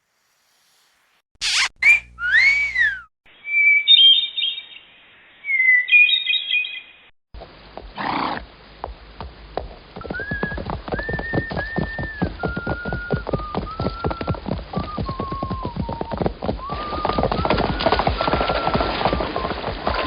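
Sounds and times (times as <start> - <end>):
sliding whistle: 1.4 - 3.1, 10.1 - 19.6
held whistle tone: 1.5 - 4.2, 10.0 - 20.0
bird-like whistled trill: 1.5 - 7.0, 10.0 - 20.0.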